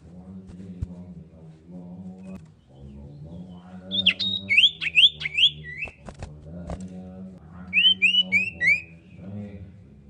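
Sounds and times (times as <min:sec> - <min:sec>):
bird whistling song: 0:03.9 - 0:06.0, 0:07.7 - 0:09.2.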